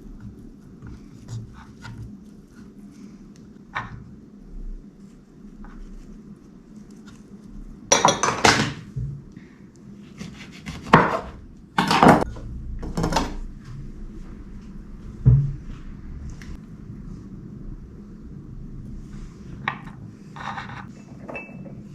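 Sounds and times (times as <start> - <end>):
low thump: 15.1 - 16.0.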